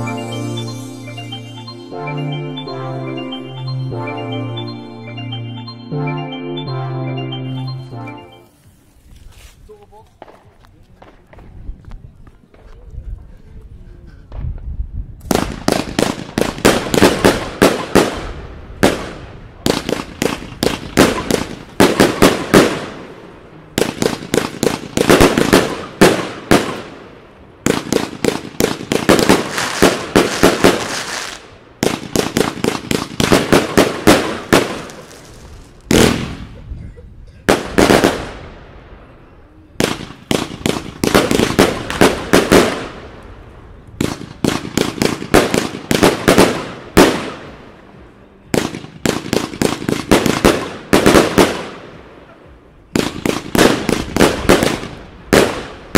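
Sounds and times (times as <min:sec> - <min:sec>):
fireworks firing in rapid volleys: 0:15.2 - 0:36.7, 0:37.4 - 0:39.0, 0:39.8 - 0:47.8, 0:48.5 - 0:55.9.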